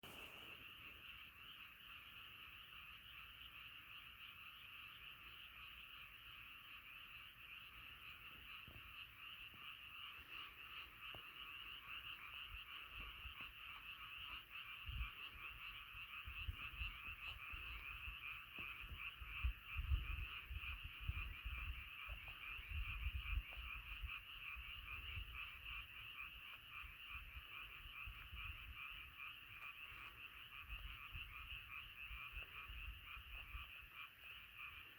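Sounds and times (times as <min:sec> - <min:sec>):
frogs croaking in chorus: 0:00.0 - 0:34.9.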